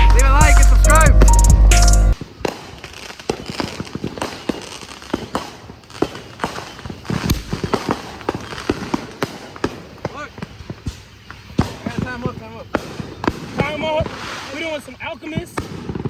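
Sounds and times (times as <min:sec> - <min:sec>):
background music: 0:00.0 - 0:02.2
loud firework bang: 0:02.2 - 0:14.7
fireworks popping and crackling: 0:02.2 - 0:16.0.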